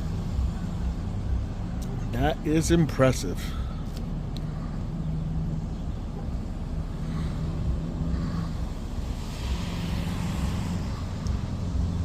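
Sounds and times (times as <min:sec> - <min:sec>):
car engine and road hum: 0:00.0 - 0:12.0
low drone: 0:04.4 - 0:12.0.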